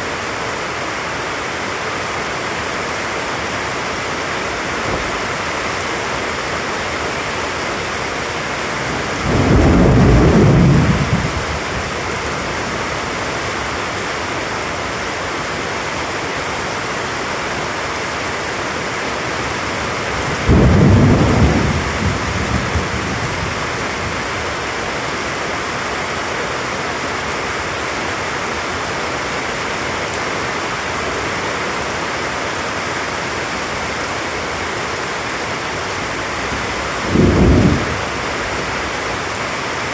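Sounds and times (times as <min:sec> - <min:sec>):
heavy rain: 0:00.0 - 0:39.9
thunder rolling: 0:08.8 - 0:13.3, 0:20.2 - 0:24.4, 0:36.3 - 0:39.2.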